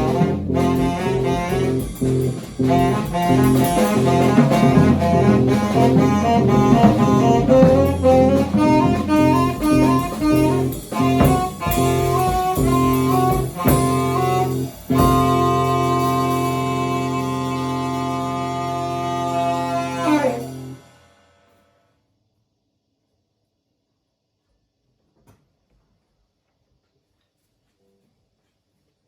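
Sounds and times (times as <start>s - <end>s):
bass: 0.0s - 20.9s
drum kit: 0.0s - 21.0s
tenor saxophone runs: 0.0s - 21.0s.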